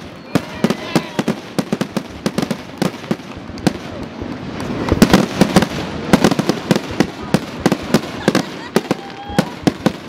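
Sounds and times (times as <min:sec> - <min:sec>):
fireworks bangs and pops: 0:00.0 - 0:10.0.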